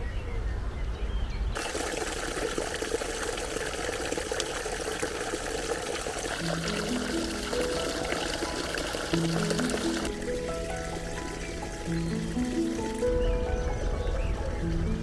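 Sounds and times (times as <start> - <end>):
water pouring and splashing: 1.6 - 14.6
soft background music: 6.4 - 15.0.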